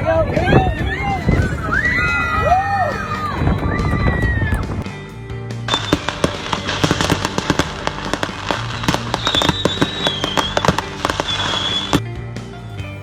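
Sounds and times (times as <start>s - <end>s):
background music low notes: 0.0s - 13.0s
dense crackling and pops: 5.7s - 12.0s
thin high whistle: 8.7s - 12.0s.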